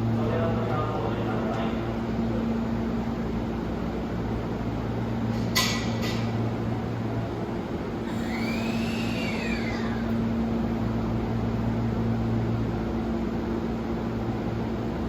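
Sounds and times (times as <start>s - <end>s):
low hum of train equipment: 0.0s - 15.0s
electric train motor whine: 6.5s - 11.2s.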